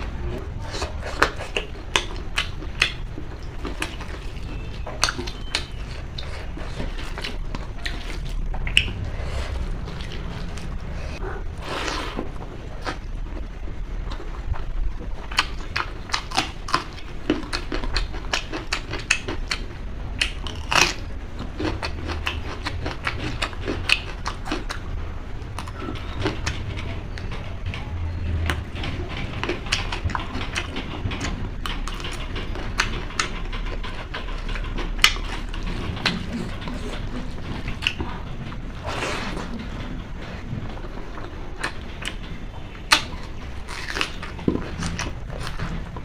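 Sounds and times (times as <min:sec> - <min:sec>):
low steady hum: 0:00.0 - 0:46.0
mouth chewing and smacking: 0:00.4 - 0:12.2, 0:12.8 - 0:46.0.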